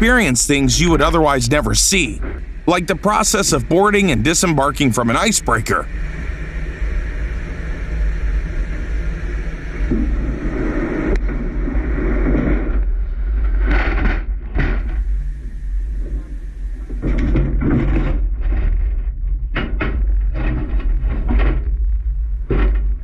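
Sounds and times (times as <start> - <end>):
ship engines rumbling: 0.0 - 5.9.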